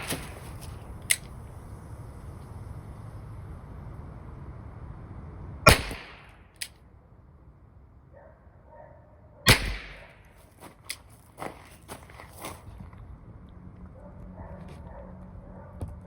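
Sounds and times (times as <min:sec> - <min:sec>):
revolver shots: 0:00.0 - 0:00.7, 0:05.7 - 0:06.4, 0:09.5 - 0:10.2
small clicks: 0:00.0 - 0:01.4.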